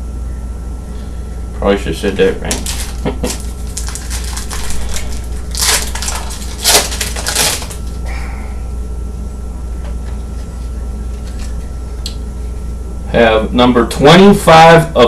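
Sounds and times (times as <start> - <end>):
low electrical hum: 0.0 - 15.0
card pack wrappers crinkling: 2.5 - 8.0.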